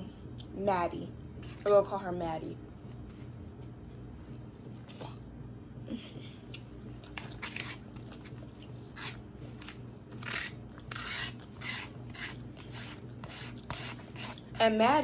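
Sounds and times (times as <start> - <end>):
crunchy food being chewed: 3.2 - 5.0, 6.5 - 14.6.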